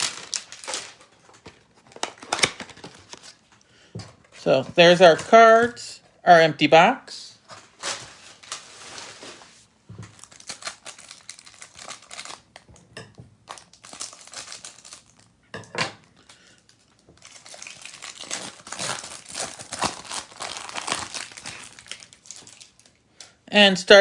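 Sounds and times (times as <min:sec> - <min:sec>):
plastic and cardboard crinkling: 0:00.0 - 0:03.6, 0:07.4 - 0:15.3, 0:16.3 - 0:23.0.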